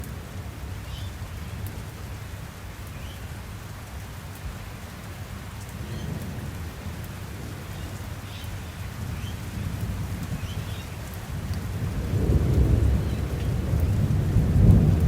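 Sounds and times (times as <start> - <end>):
steady rain: 0.0 - 15.0
low rumble of thunder: 9.0 - 15.0.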